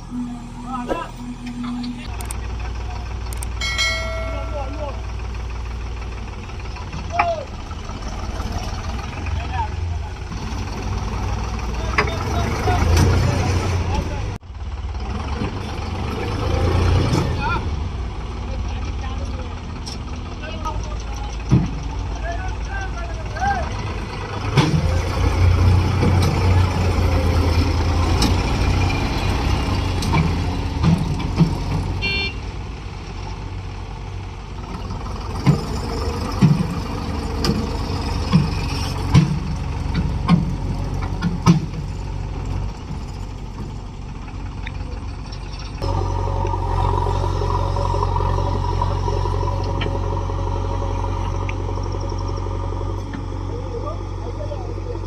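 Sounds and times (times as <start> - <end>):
heavy diesel machinery running: 0.0 - 55.0
sharp knocks and clanks: 21.2 - 22.0, 30.0 - 32.0, 35.3 - 41.9.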